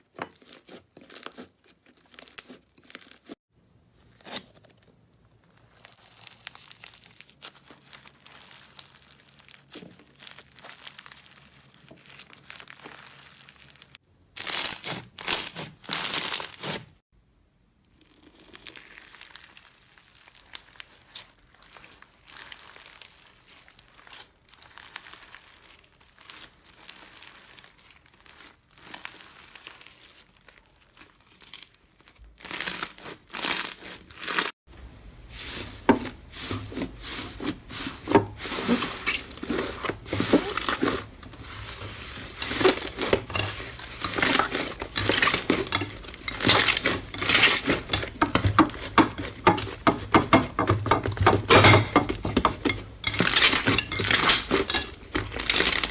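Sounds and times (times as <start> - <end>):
slime crinkling: 0.0 - 17.0, 17.8 - 55.9
slime clicking and crackling: 0.3 - 3.4, 4.2 - 16.8, 18.0 - 34.5.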